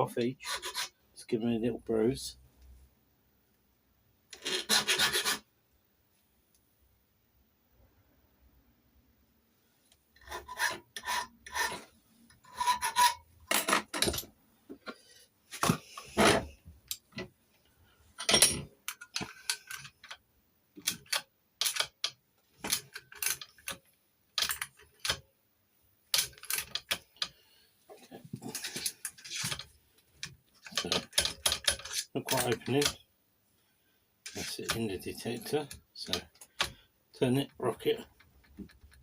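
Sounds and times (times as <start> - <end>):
file rasping on metal key: 0.4 - 1.0, 4.4 - 5.4, 10.2 - 13.2.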